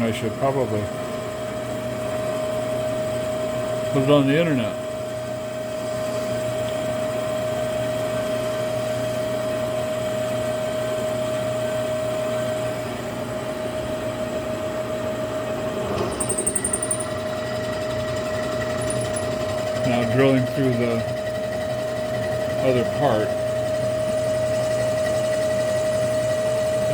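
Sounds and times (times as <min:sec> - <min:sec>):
constant hum: 0:16.1 - 0:17.2, 0:18.8 - 0:20.2.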